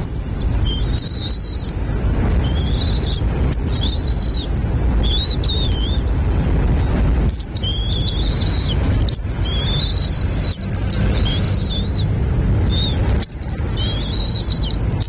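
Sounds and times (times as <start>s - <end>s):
birds chirping: 0.0s - 15.0s
steady low rumble: 0.0s - 15.0s.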